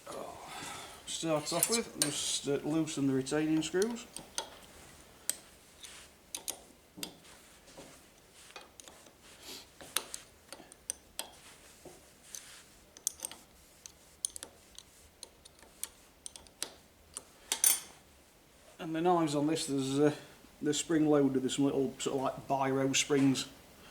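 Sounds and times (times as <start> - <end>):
spanner clicking on metal screws: 3.6 - 4.7, 5.3 - 7.2, 12.3 - 17.9.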